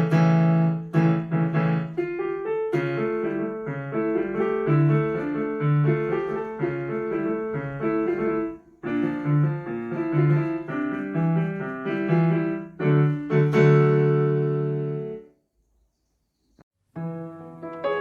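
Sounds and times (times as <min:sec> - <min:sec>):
piano piece: 0:00.0 - 0:15.4, 0:16.8 - 0:18.0.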